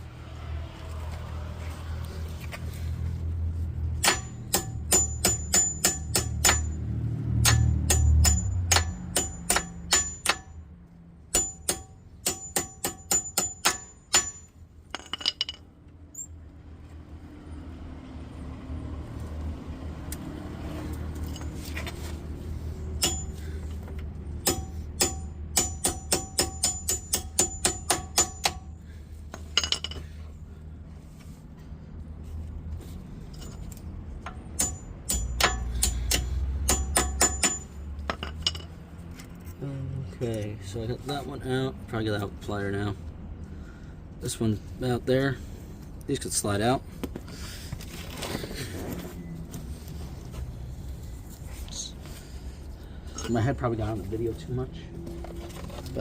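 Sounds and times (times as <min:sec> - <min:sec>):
hammer striking metal punch: 0:04.0 - 0:10.6, 0:11.3 - 0:15.6, 0:23.0 - 0:23.4, 0:24.4 - 0:28.7, 0:34.3 - 0:38.6.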